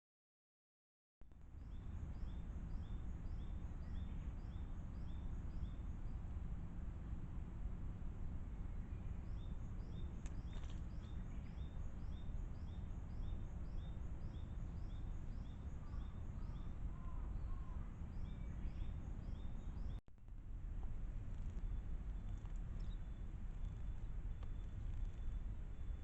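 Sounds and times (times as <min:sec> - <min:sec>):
low rumble: 0:01.3 - 0:26.0
soft bird calls: 0:08.6 - 0:20.0, 0:20.8 - 0:26.0.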